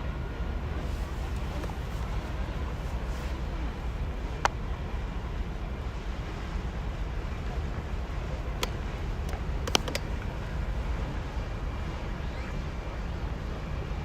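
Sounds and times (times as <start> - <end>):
wind rumble on microphone: 0.0 - 14.0
sharp clicks: 8.5 - 10.3.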